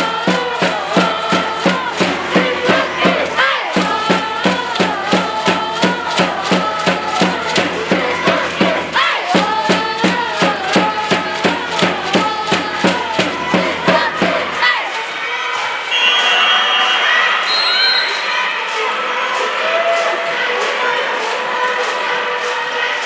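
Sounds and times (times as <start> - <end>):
steady drum beat: 0.0 - 14.7
crowd chanting a cheer: 0.0 - 23.0.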